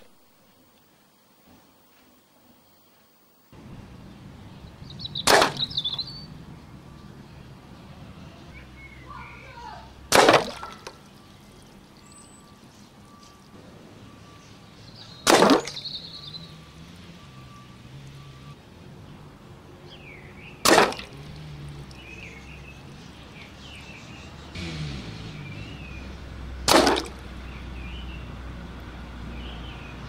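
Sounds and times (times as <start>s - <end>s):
air rifle shots: 5.2s - 5.8s.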